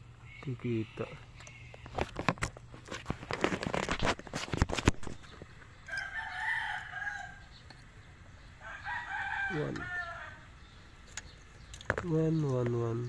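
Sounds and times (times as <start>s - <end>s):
rooster crowing: 5.9s - 7.5s, 8.6s - 10.6s.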